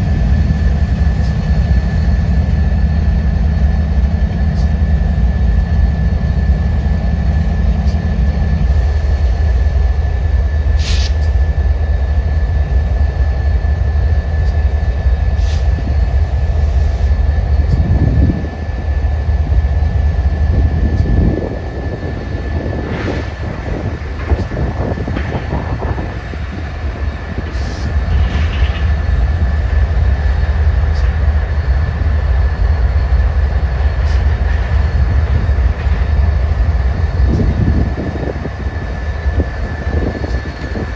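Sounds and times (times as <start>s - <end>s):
train rumbling past: 0.0s - 40.9s.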